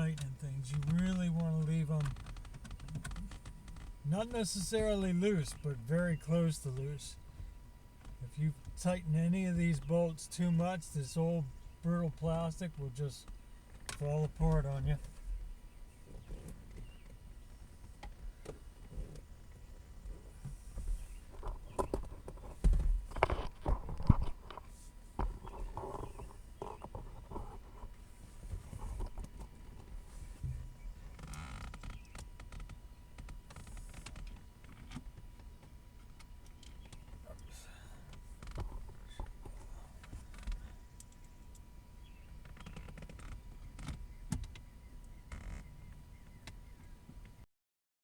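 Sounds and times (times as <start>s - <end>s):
plastic trim clicks and creaks: 2.0s - 4.0s.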